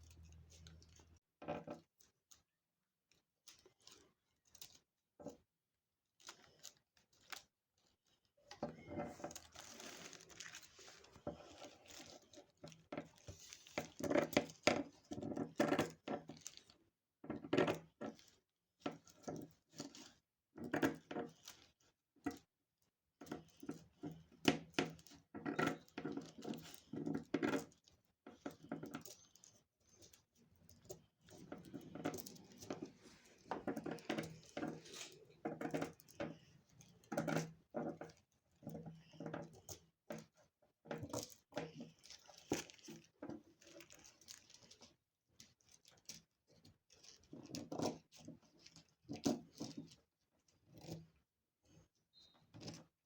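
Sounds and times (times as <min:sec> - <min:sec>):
paper rustling: 0:09.0 - 0:12.2.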